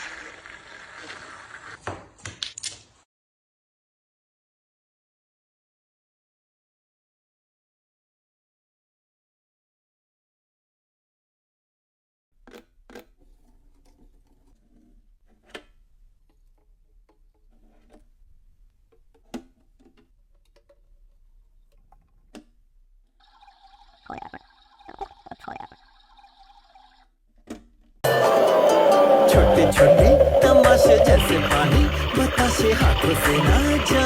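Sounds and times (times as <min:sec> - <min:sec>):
water rushing into drum: 0:28.1 - 0:34.0.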